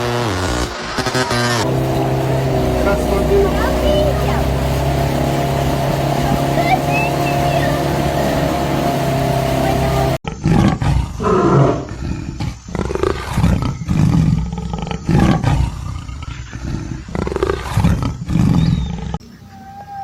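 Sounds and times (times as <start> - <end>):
quiet wavering tone: 1.6 - 10.2
large animal roaring: 10.3 - 19.0.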